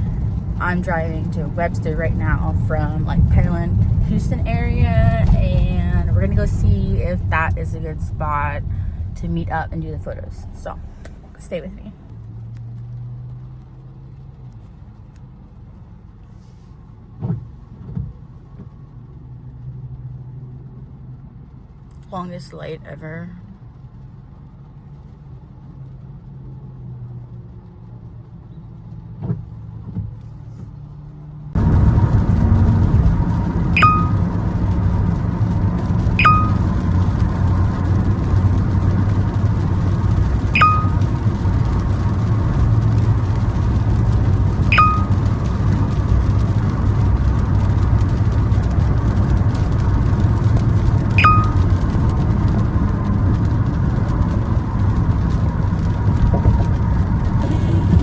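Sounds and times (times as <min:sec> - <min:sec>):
car engine hum: 0:00.0 - 0:58.0
road and driving rumble: 0:00.0 - 0:58.0
short high ping: 0:33.8 - 0:34.2, 0:36.2 - 0:36.6, 0:40.6 - 0:41.0, 0:44.7 - 0:45.2, 0:51.2 - 0:51.6.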